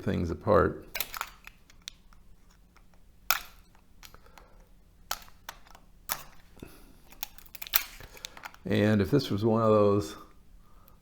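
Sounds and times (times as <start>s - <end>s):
metal laminations clicking: 0.9s - 9.1s.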